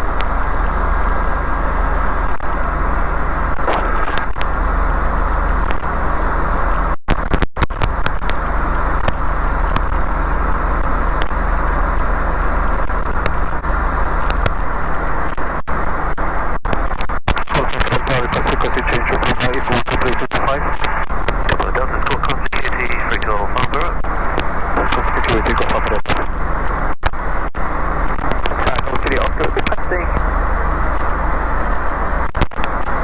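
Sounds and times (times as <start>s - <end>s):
aircraft piston engine drone: 0.0s - 7.0s, 17.6s - 33.0s.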